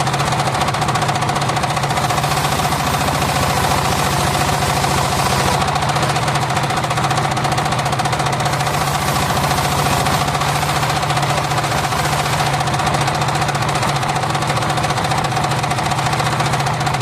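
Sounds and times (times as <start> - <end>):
sawmill engine pulsing: 0.0 - 17.0
saw blade whine: 1.6 - 14.2.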